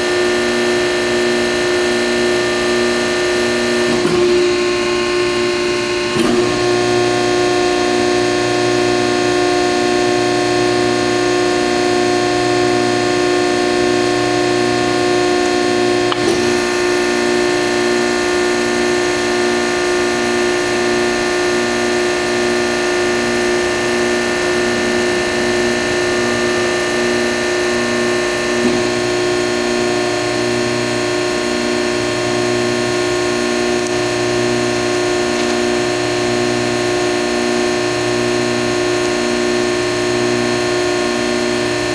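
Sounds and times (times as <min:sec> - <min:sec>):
machine hum with pulsing tone: 0:00.0 - 0:41.9
sharp click: 0:15.4 - 0:16.6.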